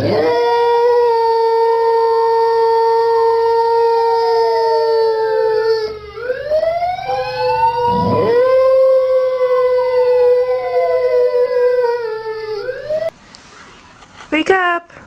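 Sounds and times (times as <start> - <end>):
overlapping wailing tones: 7.6 - 9.2.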